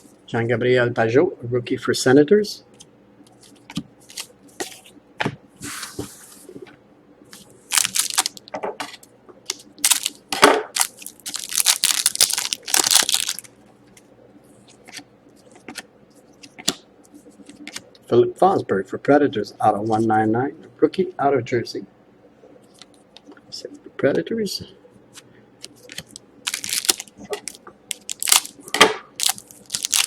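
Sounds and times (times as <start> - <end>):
wrappers crinkling and tearing: 7.7 - 8.4, 9.5 - 13.5, 25.8 - 30.0.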